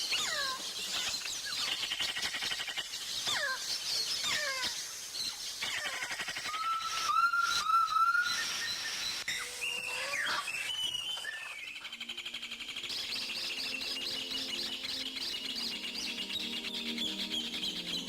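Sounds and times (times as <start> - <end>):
falling bird whistles: 6.5 - 11.9
short rising bird whistles: 6.5 - 11.9.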